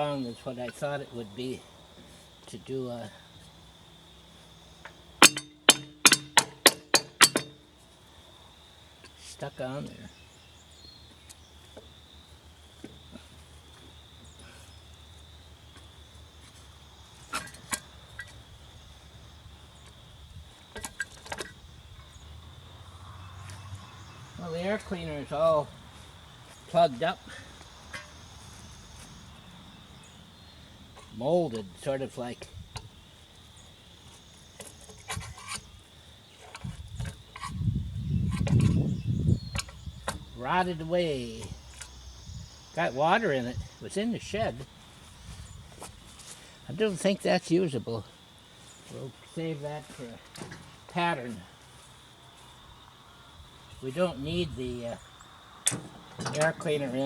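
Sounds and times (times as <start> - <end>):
high insect trill: 0.0 - 57.0
clicks and knocks of parts handled: 4.8 - 7.6, 20.7 - 21.6
rubbing and scraping of air filter: 36.3 - 41.9.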